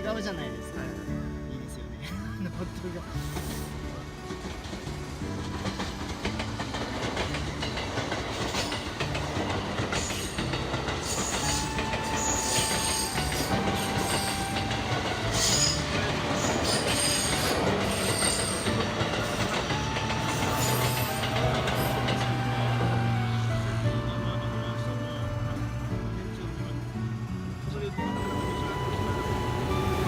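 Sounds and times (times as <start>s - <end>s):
train wheels clattering over joints: 3.2s - 27.6s
high-pitched squeals: 10.0s - 26.2s, 27.9s - 30.0s
whining tones stepping in pitch: 27.9s - 30.0s.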